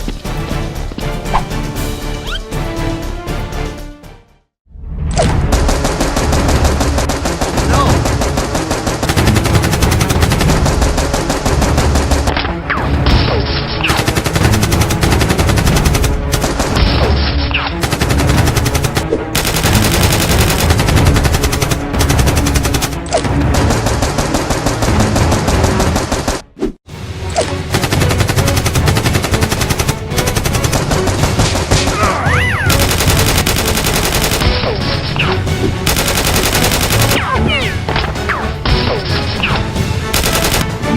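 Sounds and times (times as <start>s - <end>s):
automatic gunfire bursts: 5.7s - 12.3s, 13.9s - 16.8s, 17.8s - 26.4s, 27.8s - 34.4s, 35.9s - 37.2s, 40.1s - 40.6s.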